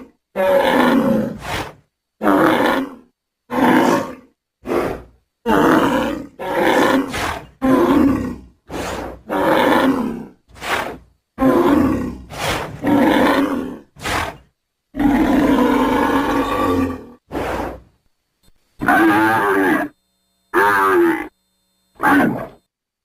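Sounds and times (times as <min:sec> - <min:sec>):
bulls bellowing: 0:18.8 - 0:19.9, 0:20.5 - 0:21.3, 0:22.0 - 0:22.6.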